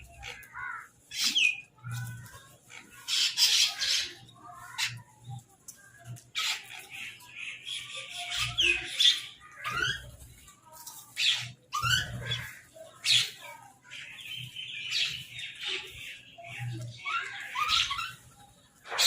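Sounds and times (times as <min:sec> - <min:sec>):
crows squawking: 0:00.0 - 0:05.1, 0:08.2 - 0:10.2, 0:11.2 - 0:13.3.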